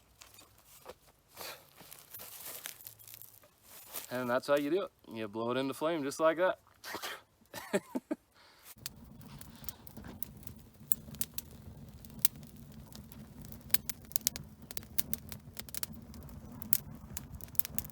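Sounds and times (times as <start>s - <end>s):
fire low rumble: 8.8s - 17.9s
tinder crackling and popping: 8.8s - 17.9s.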